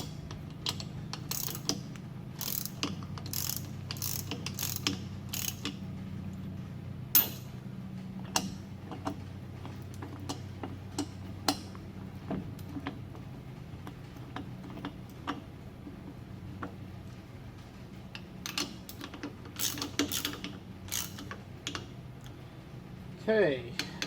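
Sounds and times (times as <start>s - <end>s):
steady low hum: 0.0s - 24.0s
ratchet pawl clicking: 1.2s - 1.8s, 2.4s - 5.8s, 19.6s - 21.4s.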